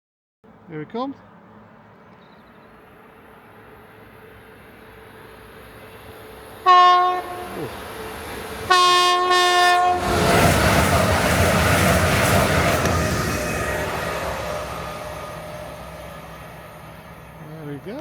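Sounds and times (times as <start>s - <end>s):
train passing with rush: 0.5s - 18.0s
train horn blasts: 6.6s - 7.8s, 8.7s - 10.3s.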